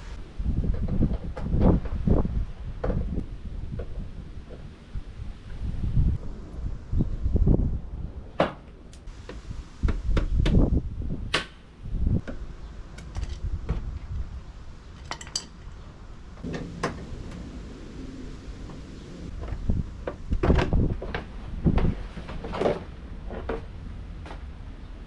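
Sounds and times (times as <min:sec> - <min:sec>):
hand tools clinking on metal: 0:15.0 - 0:15.7.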